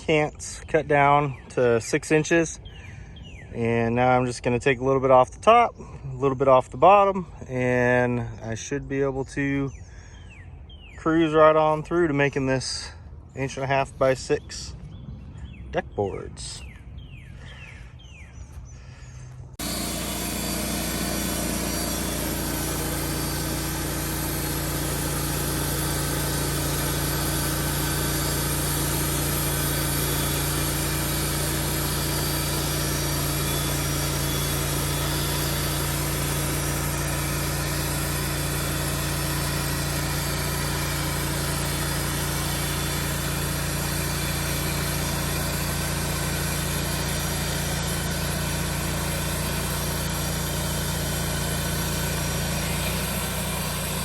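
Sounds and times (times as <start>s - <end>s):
sawmill engine running: 18.8s - 54.0s.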